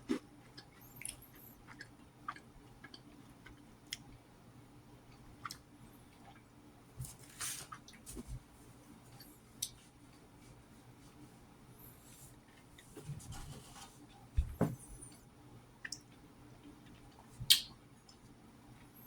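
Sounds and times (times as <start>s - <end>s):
person chewing food: 0.0s - 4.2s, 5.1s - 6.5s.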